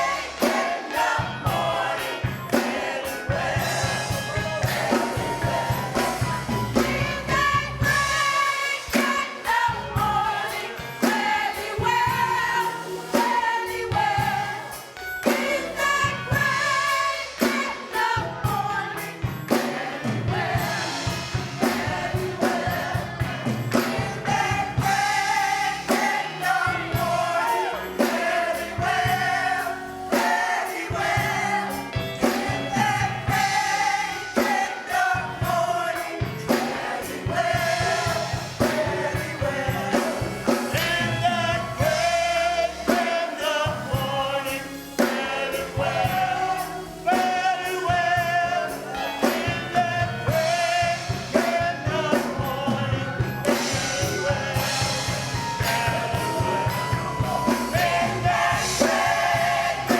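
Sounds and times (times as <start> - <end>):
gospel choir singing: 0.0 - 59.9
instrumental accompaniment with beat: 0.0 - 59.9.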